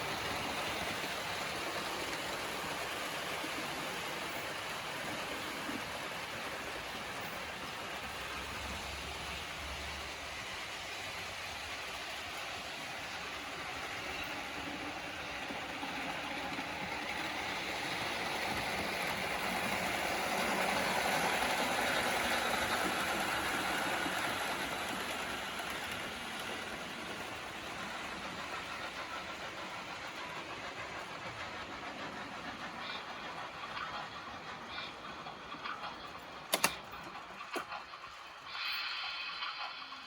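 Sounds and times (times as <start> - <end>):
model train whirring and rattling: 0.0 - 40.0.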